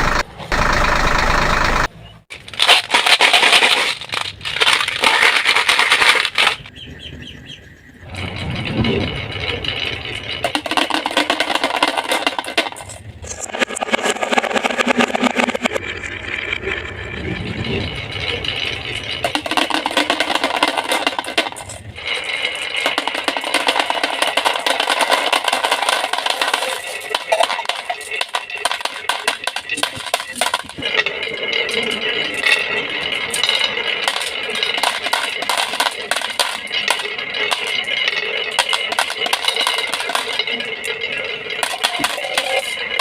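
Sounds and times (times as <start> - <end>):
marbles rattling down track: 0.0 - 1.9, 8.3 - 15.8, 16.5 - 43.0
steady ringing tones: 0.0 - 1.9, 15.8 - 43.0.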